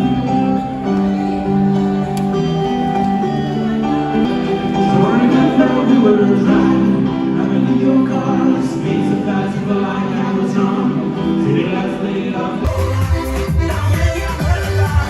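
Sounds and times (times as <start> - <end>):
music with singing voices: 0.0 - 15.0.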